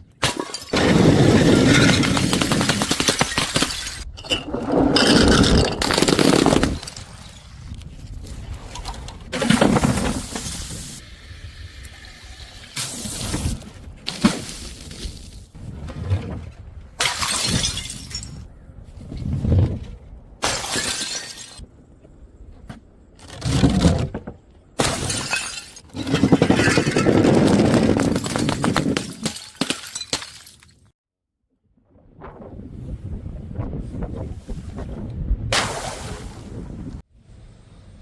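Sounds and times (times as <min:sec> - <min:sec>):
glass bottles smashing: 0:00.2 - 0:07.6, 0:17.0 - 0:18.4, 0:20.4 - 0:21.6, 0:24.8 - 0:30.8.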